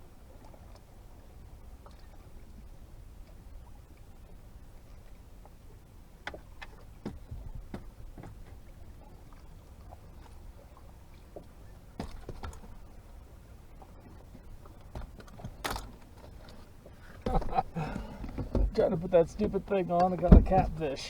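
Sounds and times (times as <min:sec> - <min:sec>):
low rumble of wind and water: 0:00.0 - 0:21.0
knocks and clicks inside boat: 0:06.2 - 0:09.4, 0:11.2 - 0:12.9, 0:14.4 - 0:21.0.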